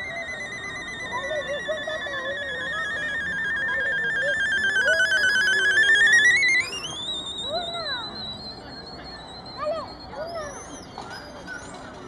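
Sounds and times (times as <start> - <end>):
synthetic warbling trill: 0.0 - 9.6.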